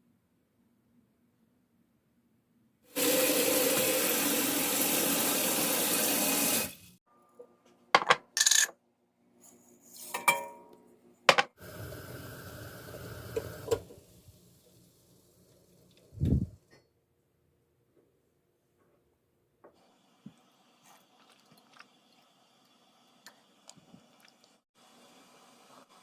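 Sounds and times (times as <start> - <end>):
water running from a tap: 3.0 - 7.0, 11.6 - 14.8, 20.2 - 24.6
dishes clinking: 10.1 - 10.7.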